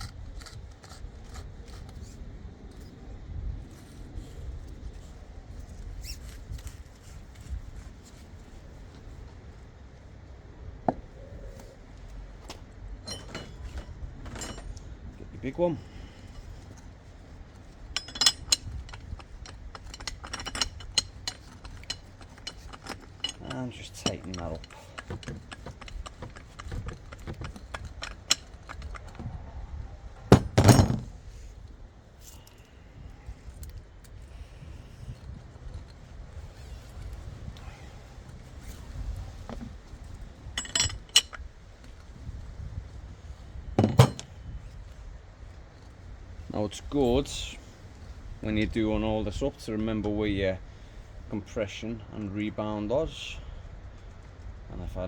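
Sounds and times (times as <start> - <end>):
faint squeaks and rustling: 0.0 - 3.0, 3.6 - 9.7, 11.0 - 51.4
metallic clank and clatter: 12.5 - 14.9, 17.6 - 29.3, 30.3 - 31.2, 40.5 - 41.5, 43.8 - 44.4.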